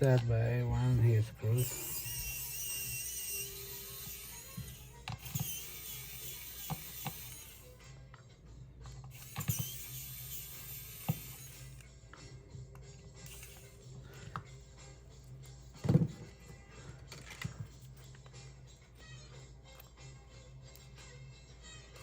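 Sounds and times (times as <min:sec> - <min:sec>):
screwdriver clicking on tiny screws: 0:01.6 - 0:07.7, 0:09.1 - 0:11.9.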